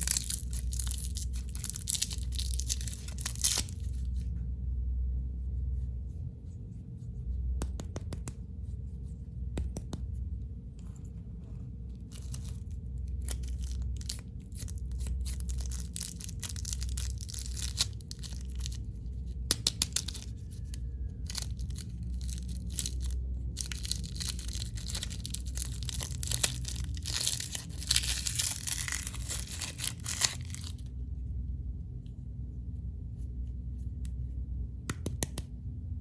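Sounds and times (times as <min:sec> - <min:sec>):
wrappers crinkling and tearing: 0:00.0 - 0:04.2, 0:12.1 - 0:30.9.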